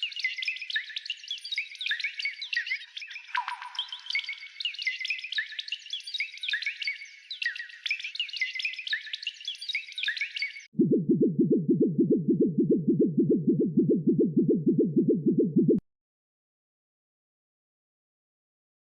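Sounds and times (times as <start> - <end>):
low pulsing electronic throb: 10.8 - 15.8.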